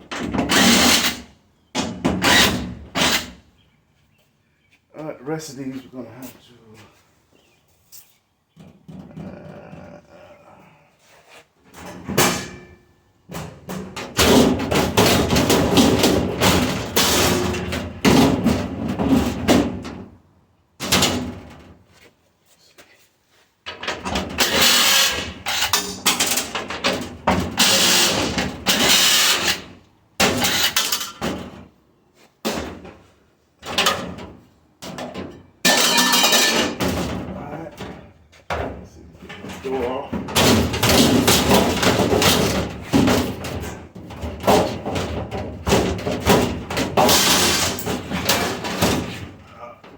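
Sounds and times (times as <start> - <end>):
metal banging and clattering: 11.8 - 20.2, 20.8 - 21.8, 23.7 - 31.8, 32.4 - 49.9.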